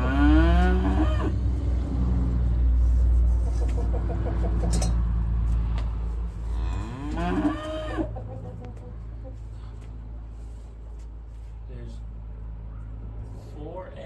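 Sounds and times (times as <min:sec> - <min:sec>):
cow mooing: 0:00.0 - 0:02.2, 0:06.5 - 0:08.2.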